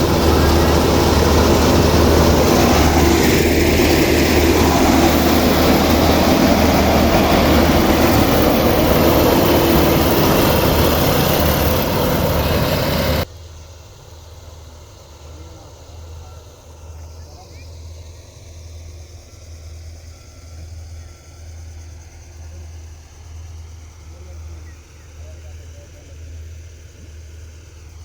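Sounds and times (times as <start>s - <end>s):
combine harvester running: 0.0s - 19.0s.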